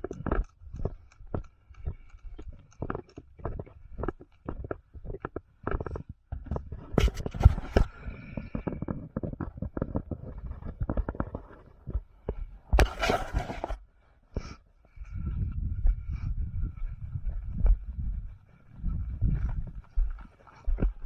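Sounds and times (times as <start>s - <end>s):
footsteps: 0.8s - 13.8s, 16.6s - 21.0s
rushing scrape: 12.8s - 13.8s.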